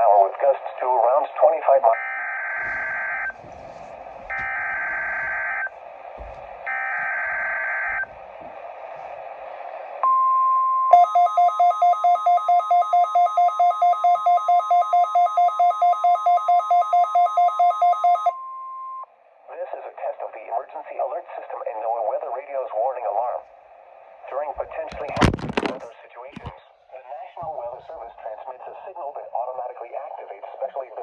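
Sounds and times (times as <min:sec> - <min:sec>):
steady weather alert tone: 0:00.0 - 0:12.9
pulsing electronic alarm beep: 0:04.3 - 0:05.7, 0:06.6 - 0:08.1, 0:10.0 - 0:19.1.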